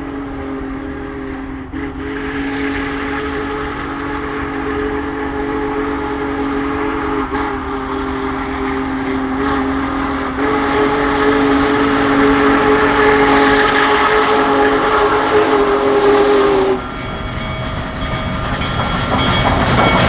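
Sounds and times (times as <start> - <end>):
steam whistle blowing a chord: 0.0 - 18.1
moving train: 0.0 - 20.0.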